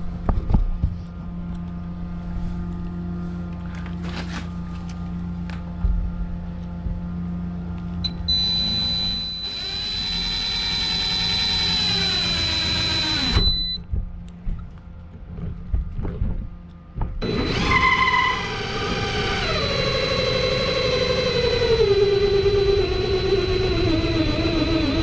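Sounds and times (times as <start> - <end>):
electric drill whining: 8.1 - 13.8, 17.2 - 25.0.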